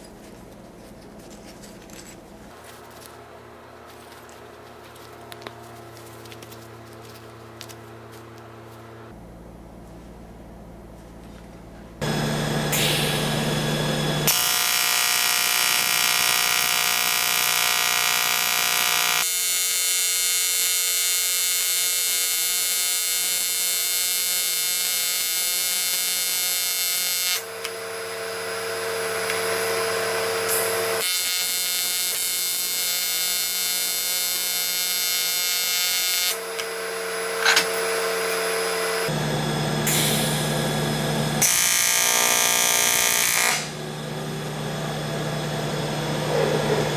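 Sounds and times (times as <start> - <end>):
welding arc buzzing: 12.0 - 46.9.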